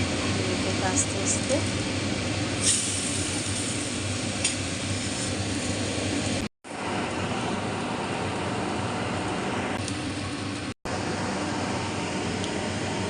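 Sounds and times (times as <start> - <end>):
motor or fan humming: 0.0 - 13.0
pancake sizzling on hot griddle: 2.5 - 6.3.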